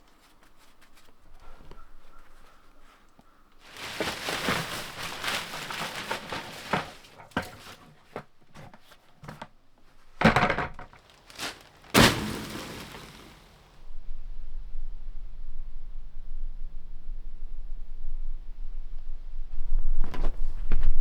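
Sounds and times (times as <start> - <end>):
rustling and crumpling handling: 0.1 - 9.0, 11.0 - 13.7.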